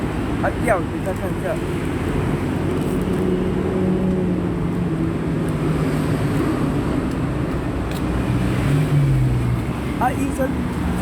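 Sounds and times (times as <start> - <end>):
rumble of passing vehicles: 0.0 - 11.0
engine hum close by: 1.6 - 11.0.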